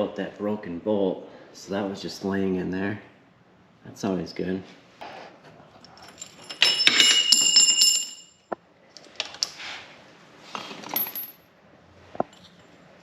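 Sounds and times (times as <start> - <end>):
metal parts clinking: 5.8 - 8.4, 10.8 - 11.4.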